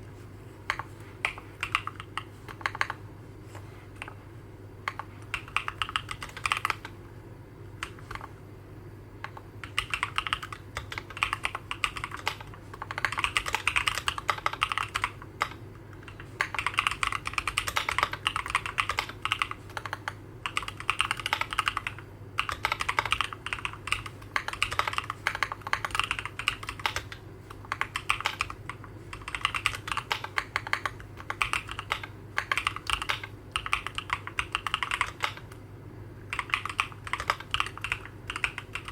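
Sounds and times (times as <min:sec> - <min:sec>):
mechanical keyboard typing: 0:00.7 - 0:03.0, 0:04.8 - 0:06.9, 0:07.8 - 0:08.3, 0:09.2 - 0:35.6, 0:36.3 - 0:38.9.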